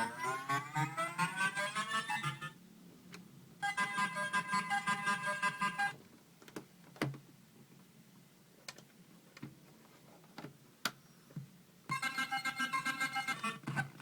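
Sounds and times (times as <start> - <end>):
electronic toy bleeping tones: 0.0 - 2.6, 3.6 - 5.9, 11.9 - 13.6.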